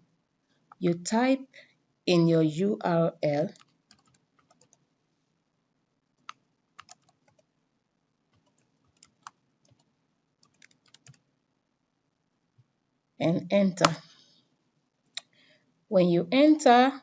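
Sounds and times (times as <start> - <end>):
faint keystrokes on laptop keyboard: 3.5 - 4.9, 6.2 - 7.5, 8.3 - 11.3.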